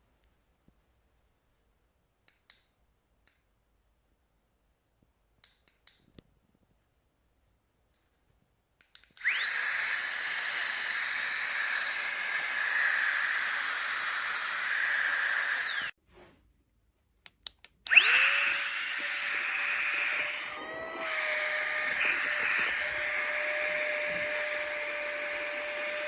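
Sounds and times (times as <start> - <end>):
electric air pump whirring: 9.2 - 16.0, 17.9 - 26.0.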